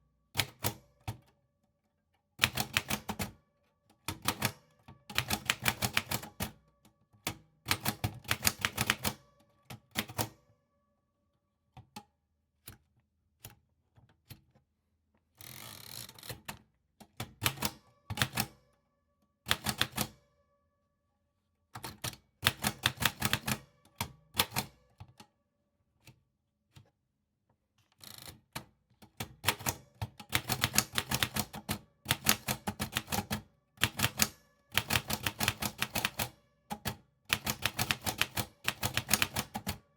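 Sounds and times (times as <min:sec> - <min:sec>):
typewriter keys clicking: 0:29.4 - 0:39.8.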